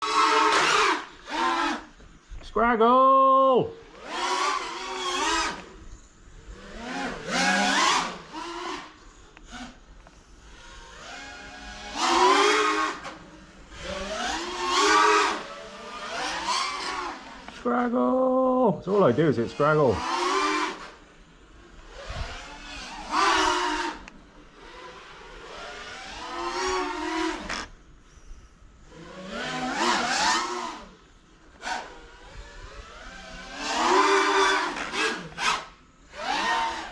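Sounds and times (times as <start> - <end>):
quadcopter motors whining: 0.0 - 2.5, 3.3 - 36.9.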